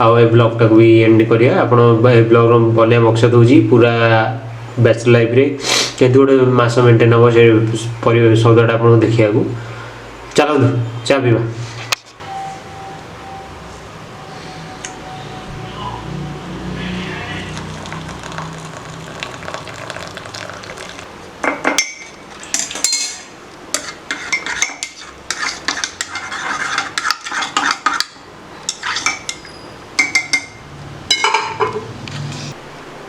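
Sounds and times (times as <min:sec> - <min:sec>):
spoon clinking against utensils: 0:17.5 - 0:31.8.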